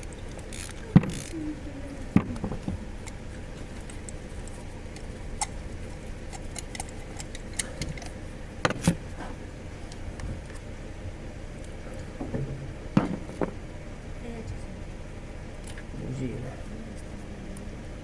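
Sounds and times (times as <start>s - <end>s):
hand tools clicking: 0.0s - 1.4s, 2.1s - 9.0s
sharp knock: 12.2s - 13.5s.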